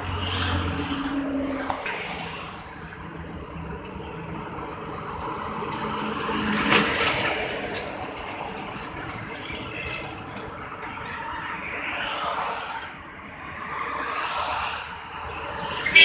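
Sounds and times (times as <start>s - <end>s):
heavy truck passing: 0.0s - 10.8s.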